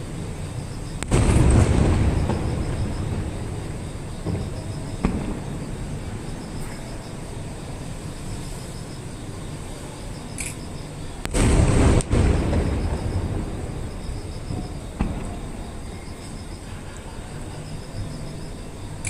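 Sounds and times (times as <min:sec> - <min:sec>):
faint firework pops: 0:04.2 - 0:05.7, 0:14.5 - 0:15.6.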